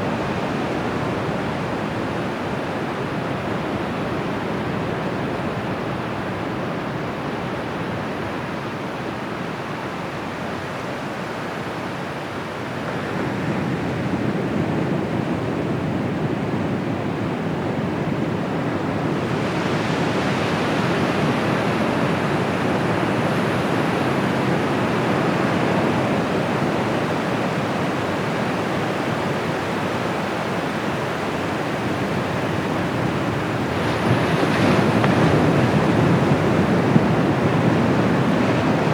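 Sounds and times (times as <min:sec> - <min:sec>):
ocean surf washing up beach: 0:17.2 - 0:38.9.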